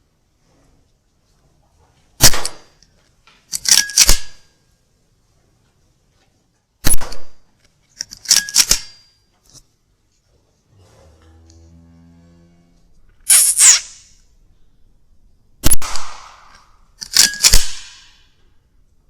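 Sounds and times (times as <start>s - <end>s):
air rifle shot: 2.2s - 2.7s, 6.8s - 7.4s, 15.6s - 16.8s, 17.4s - 18.2s
metallic clicks of rifle action: 2.2s - 4.5s, 6.9s - 9.6s, 15.7s - 18.3s.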